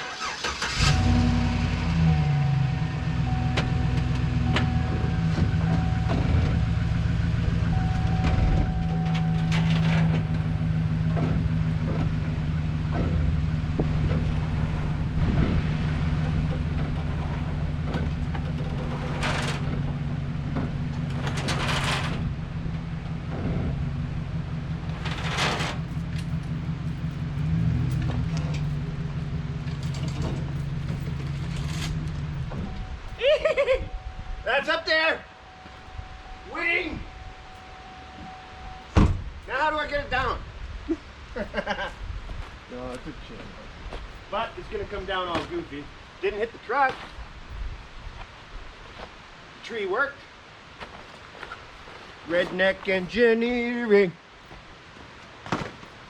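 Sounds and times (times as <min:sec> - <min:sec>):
vehicle engine running: 0:00.0 - 0:41.4
high beeping tone: 0:00.9 - 0:11.0, 0:32.5 - 0:39.6.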